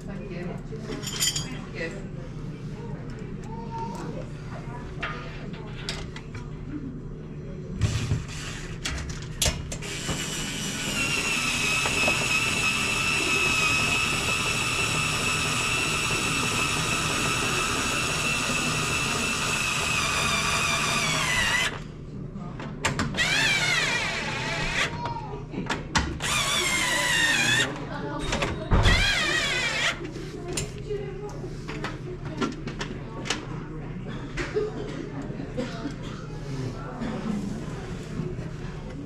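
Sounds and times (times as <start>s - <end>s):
power drill motor whining: 9.8s - 21.8s, 23.2s - 24.9s, 26.2s - 27.8s, 28.9s - 30.0s.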